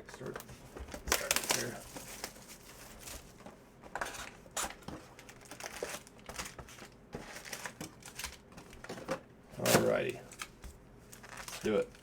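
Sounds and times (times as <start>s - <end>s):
plastic wrapping crinkling and tearing: 1.0s - 3.4s, 4.0s - 8.5s, 11.1s - 12.0s.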